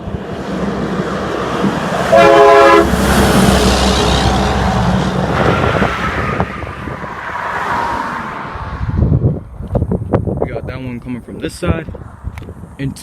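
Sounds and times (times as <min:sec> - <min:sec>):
truck engine and tyre noise: 0:00.0 - 0:13.0
truck air horn blast: 0:02.1 - 0:03.0.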